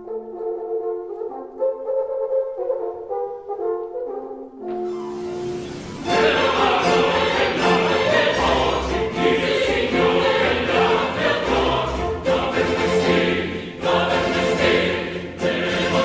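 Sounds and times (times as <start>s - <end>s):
held orchestral chords: 4.6s - 16.0s
chorus singing with orchestra: 5.6s - 16.0s.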